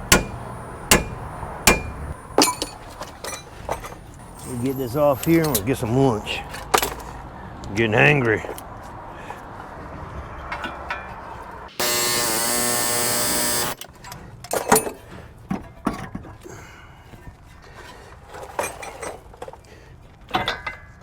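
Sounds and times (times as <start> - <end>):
power tool whining: 0.0 - 2.2, 11.8 - 13.9
metallic clinks of tools: 0.1 - 5.7.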